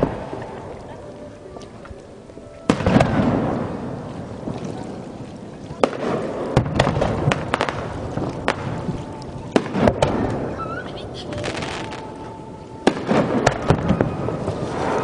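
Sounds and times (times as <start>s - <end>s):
fireworks exploding: 2.7s - 4.5s, 5.7s - 15.0s.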